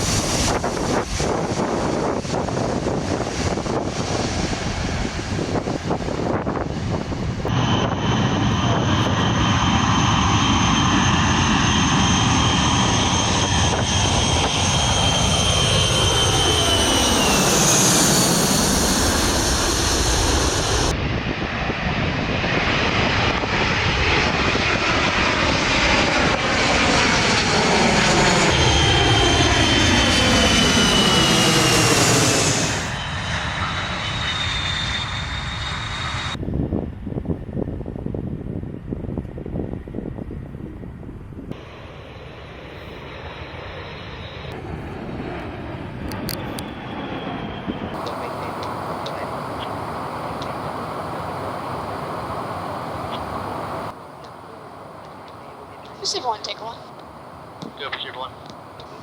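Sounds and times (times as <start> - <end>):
jet airplane engines passing: 0.0 - 59.0.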